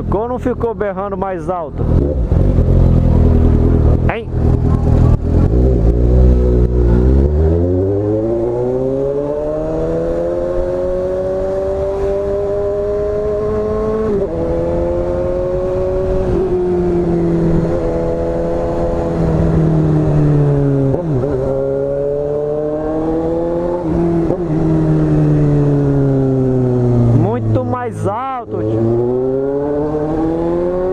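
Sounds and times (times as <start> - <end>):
motorcycle accelerating: 0.0 - 30.9.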